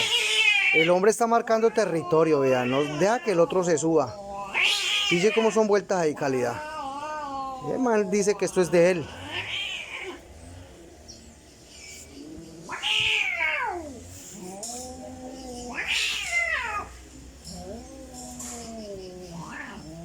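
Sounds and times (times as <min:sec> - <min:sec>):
cats yowling: 0:00.0 - 0:20.0
cat low moans: 0:06.2 - 0:20.0.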